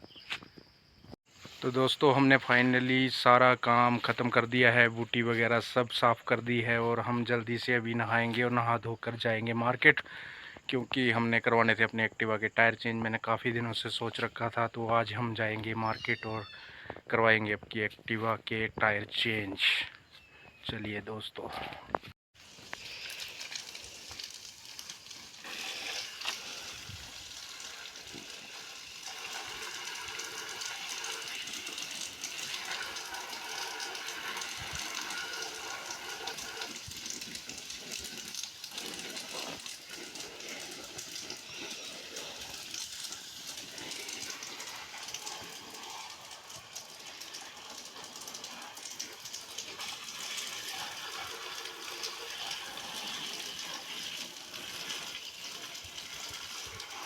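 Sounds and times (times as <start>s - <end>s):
running water gushing and splashing: 22.4s - 57.0s.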